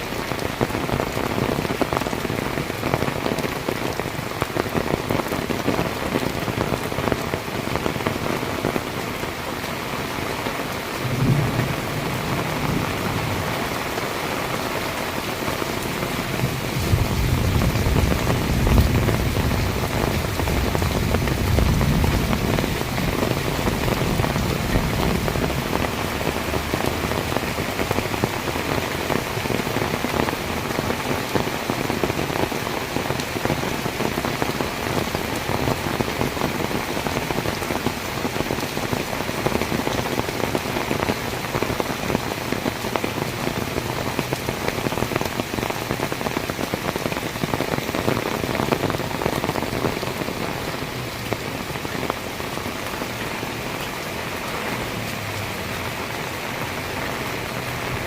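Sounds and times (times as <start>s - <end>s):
heavy rain pouring: 0.0s - 58.0s
distant thunder rumbling: 10.9s - 15.0s, 15.6s - 30.9s.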